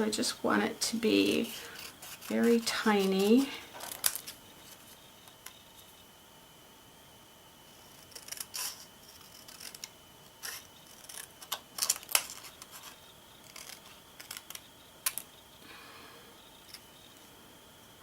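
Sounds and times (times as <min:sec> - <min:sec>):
paper snips cutting paper: 0:07.9 - 0:11.3.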